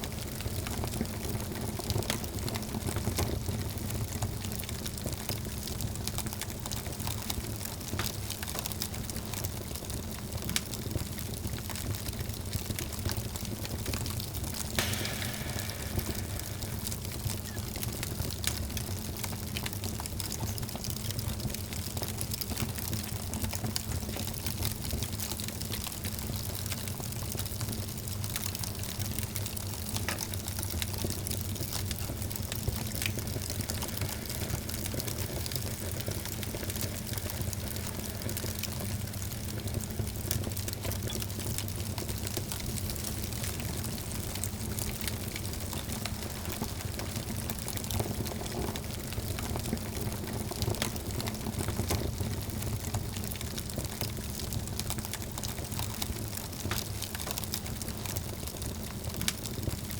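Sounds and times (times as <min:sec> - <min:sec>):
wood fire crackling: 0:00.1 - 0:59.9
low rumble: 0:14.8 - 0:18.0.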